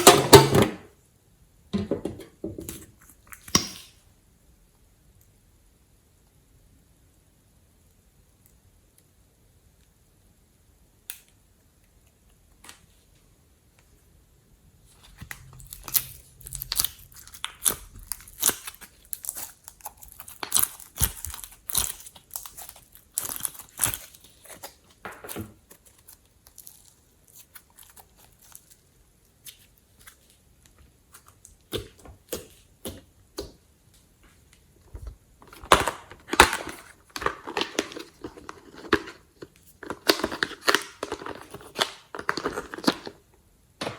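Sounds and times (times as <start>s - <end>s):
slime crackling and popping: 15.1s - 30.4s, 35.5s - 43.2s.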